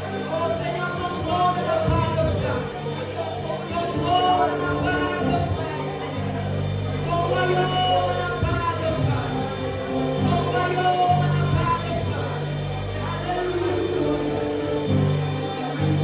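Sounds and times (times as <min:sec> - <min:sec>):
band playing worship music: 0:00.0 - 0:16.0
sustained bass notes: 0:00.0 - 0:16.0.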